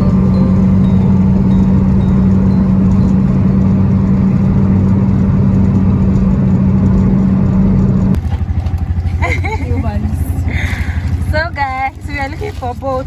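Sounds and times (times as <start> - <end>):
vehicle engine humming: 0.0 - 13.0.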